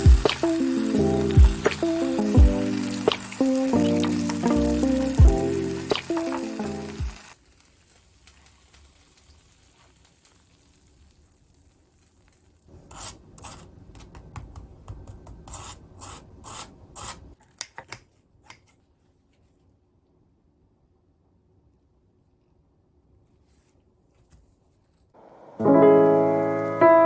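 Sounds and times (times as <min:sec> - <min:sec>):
background music: 0:00.0 - 0:07.4, 0:25.6 - 0:27.0.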